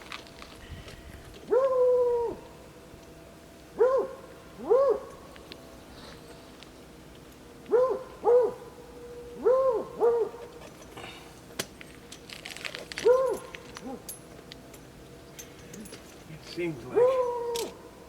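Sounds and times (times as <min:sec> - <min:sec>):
dog whining: 0:01.5 - 0:02.4, 0:17.0 - 0:17.8.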